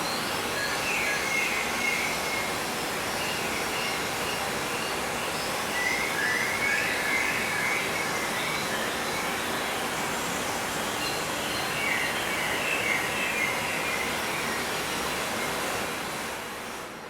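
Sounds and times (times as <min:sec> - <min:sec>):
steady rushing background noise: 0:00.0 - 0:17.0.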